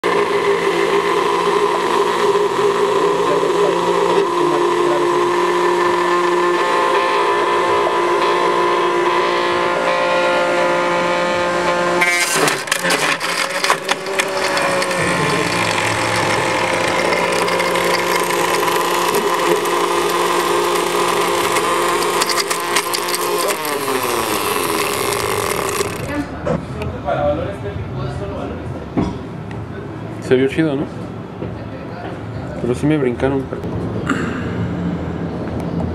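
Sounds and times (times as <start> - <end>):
ice cream cone crunching in blender: 0.0 - 6.2, 12.0 - 26.4
blender motor whining: 0.0 - 26.5.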